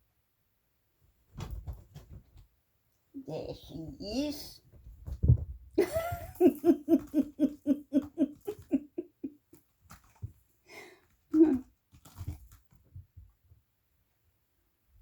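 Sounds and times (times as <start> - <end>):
woman laughing: 5.8 - 9.4.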